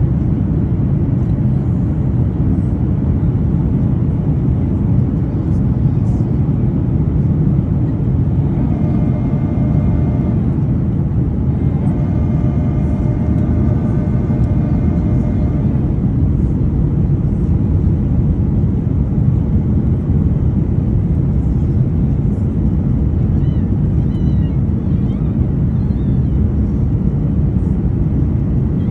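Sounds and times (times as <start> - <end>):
airliner cabin engine rush: 0.0 - 28.9
faint high steady tones: 8.2 - 16.4.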